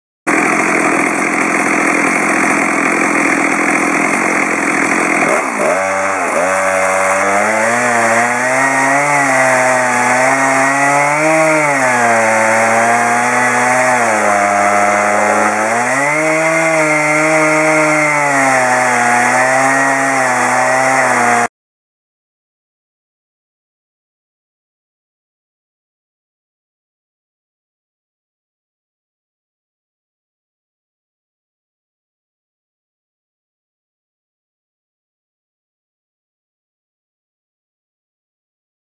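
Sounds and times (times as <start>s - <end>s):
chainsaw cutting wood: 0.3s - 21.5s.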